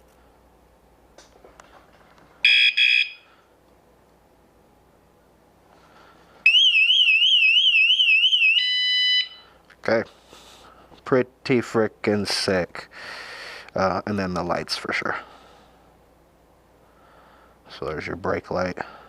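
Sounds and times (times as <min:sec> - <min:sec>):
warbling electronic siren: 0:02.4 - 0:03.2, 0:06.5 - 0:09.4.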